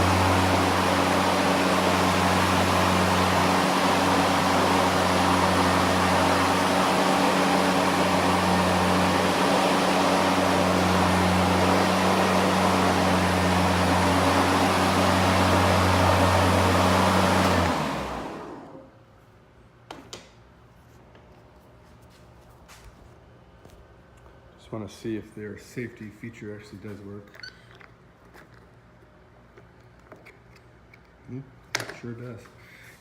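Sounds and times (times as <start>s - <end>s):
lawn mower motor whirring: 0.0s - 18.8s.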